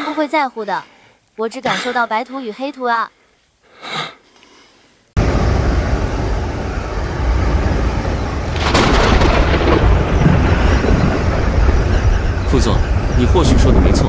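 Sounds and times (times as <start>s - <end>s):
rumbling thunder: 5.2s - 14.0s
thunder crash: 5.2s - 14.0s.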